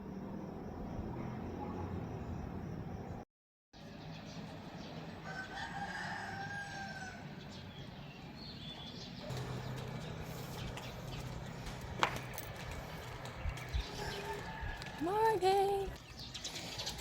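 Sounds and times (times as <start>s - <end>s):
low hum: 9.3s - 14.4s.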